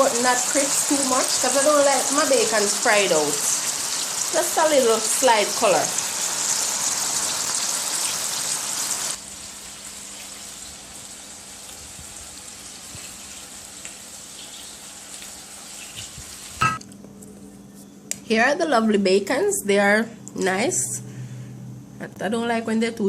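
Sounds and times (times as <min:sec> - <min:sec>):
bacon sizzling in a pot: 0:00.0 - 0:16.7.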